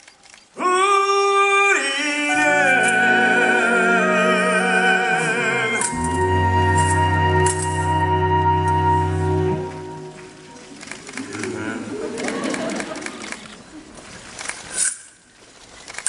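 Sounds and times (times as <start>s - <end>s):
voices singing in harmony: 0.6s - 10.5s
orchestra playing: 2.1s - 10.9s
deep bass chord: 2.6s - 10.3s.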